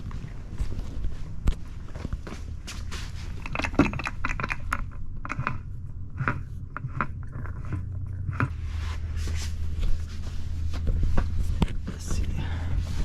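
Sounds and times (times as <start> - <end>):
low hum: 0.0 - 13.0
metal parts clinking and knocking: 3.3 - 8.5.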